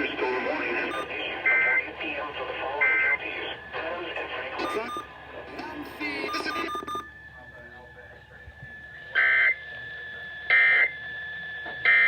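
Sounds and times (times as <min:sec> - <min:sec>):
screechy digital data tones: 0:00.8 - 0:01.1, 0:04.6 - 0:05.1, 0:06.1 - 0:07.1.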